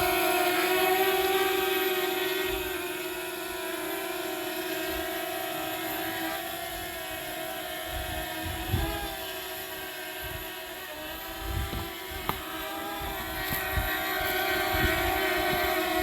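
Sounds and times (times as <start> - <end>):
drone propellers whining: 0.0 - 16.0
wind buffeting microphone: 7.7 - 16.0.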